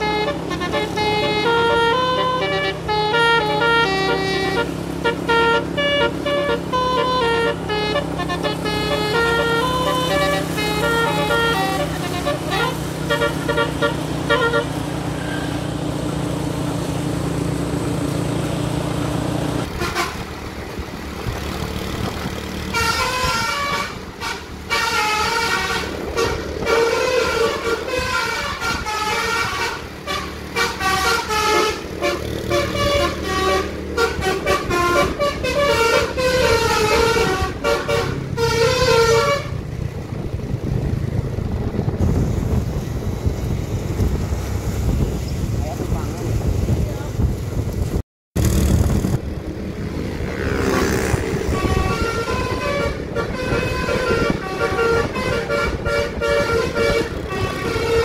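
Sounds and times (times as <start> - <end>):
multi-tone air horn melody: 0.0 - 15.6, 19.7 - 20.2, 22.7 - 39.6, 50.7 - 58.0
bus engine running: 0.0 - 58.0.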